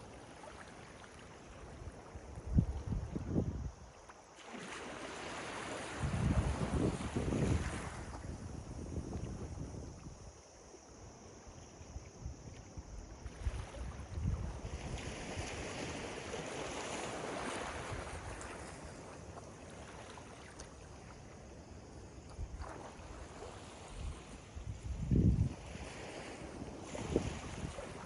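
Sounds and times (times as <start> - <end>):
wind buffeting microphone: 2.4 - 3.8, 6.0 - 10.4, 13.4 - 16.1, 24.0 - 25.9.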